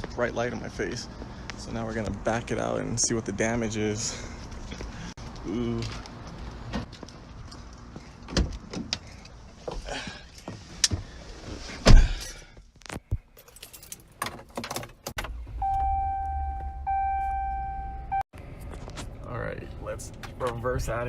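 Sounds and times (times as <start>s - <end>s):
keys jangling: 13.4s - 15.0s
electronic warning chime: 15.6s - 18.2s.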